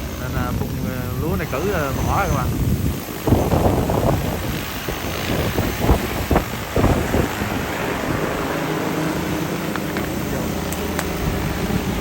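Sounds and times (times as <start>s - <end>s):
wind buffeting microphone: 0.0s - 9.2s, 10.8s - 12.0s
drone propellers humming: 0.0s - 12.0s.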